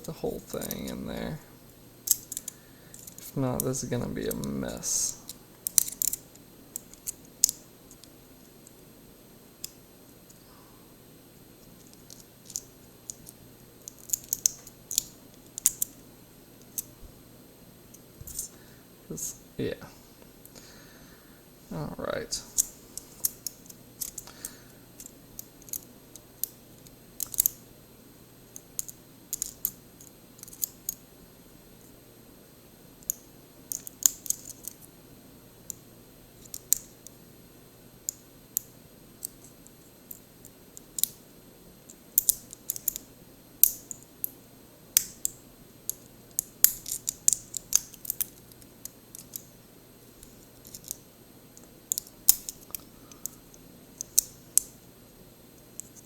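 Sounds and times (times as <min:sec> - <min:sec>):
metallic clicks and scrapes in lock: 0:05.7 - 0:06.2, 0:27.2 - 0:27.6, 0:45.0 - 0:48.4.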